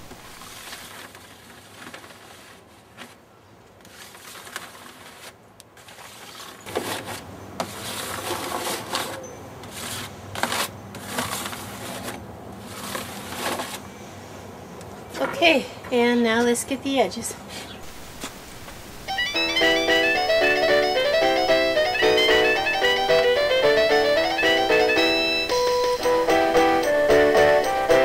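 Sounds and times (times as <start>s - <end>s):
rustles: 0.0s - 15.4s, 17.5s - 19.2s.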